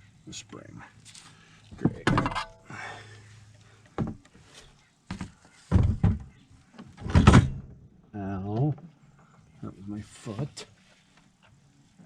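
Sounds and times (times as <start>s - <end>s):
hard objects knocking and thumping: 1.8s - 2.6s, 5.1s - 6.3s.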